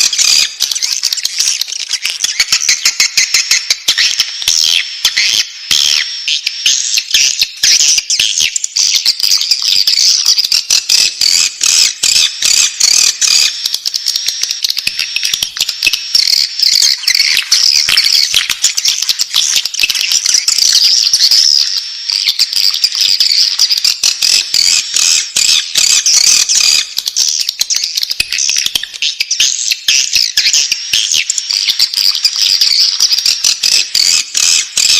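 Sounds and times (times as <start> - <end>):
chicks chattering calls: 0.0 - 34.9
rapid clicks: 10.2 - 21.0.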